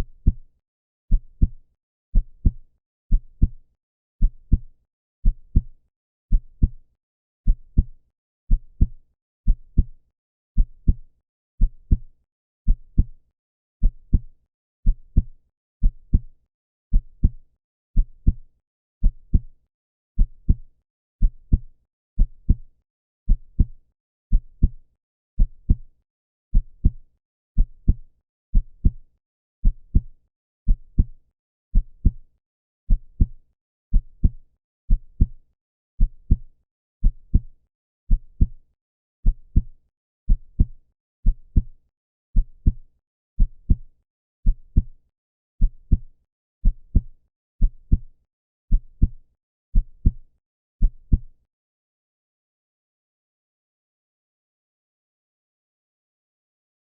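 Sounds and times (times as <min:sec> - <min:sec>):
heartbeat: 0:01.1 - 0:01.6, 0:02.2 - 0:03.6, 0:04.2 - 0:04.6, 0:06.3 - 0:06.8, 0:07.5 - 0:07.9, 0:08.6 - 0:10.0, 0:10.6 - 0:11.0, 0:11.6 - 0:12.1, 0:12.7 - 0:13.2, 0:13.8 - 0:16.3, 0:16.9 - 0:17.4, 0:18.0 - 0:18.4, 0:19.1 - 0:19.5, 0:20.2 - 0:20.6, 0:21.2 - 0:21.7, 0:22.3 - 0:22.6, 0:23.3 - 0:24.8, 0:25.4 - 0:25.8, 0:26.5 - 0:27.0, 0:27.6 - 0:28.0, 0:28.6 - 0:29.0, 0:29.6 - 0:30.1, 0:30.7 - 0:31.2, 0:31.8 - 0:32.2, 0:32.9 - 0:35.4, 0:36.0 - 0:37.5, 0:38.1 - 0:38.6, 0:39.2 - 0:39.7, 0:40.3 - 0:41.7, 0:42.4 - 0:42.8, 0:43.4 - 0:44.9, 0:45.6 - 0:48.1, 0:48.7 - 0:49.2, 0:49.8 - 0:50.2, 0:50.8 - 0:51.3.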